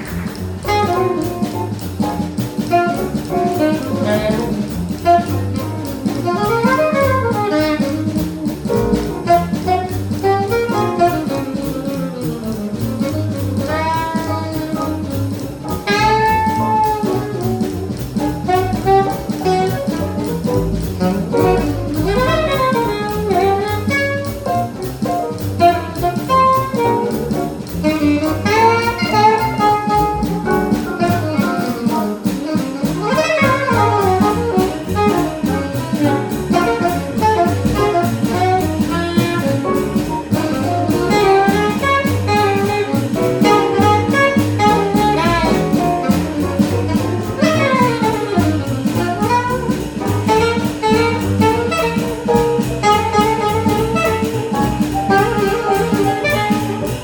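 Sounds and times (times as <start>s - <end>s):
horn soloing: 0.0s - 1.6s, 12.8s - 24.8s, 25.6s - 57.0s
drum kit: 0.0s - 57.0s
upright bass: 0.0s - 57.0s.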